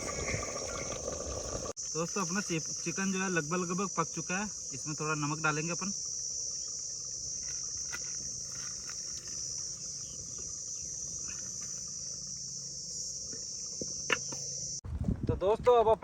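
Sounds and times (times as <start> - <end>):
insects chirring: 0.0 - 14.8.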